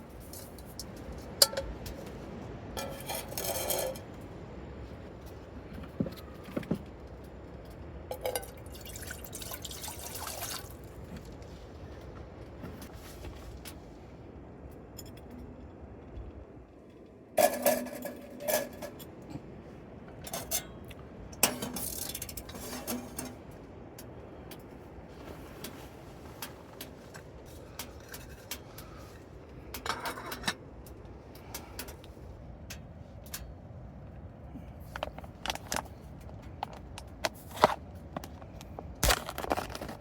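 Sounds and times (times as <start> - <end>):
pots and utensils clinking: 0.2 - 2.0, 2.8 - 4.1, 17.4 - 19.4, 21.4 - 23.4
liquid sounds: 8.1 - 11.1.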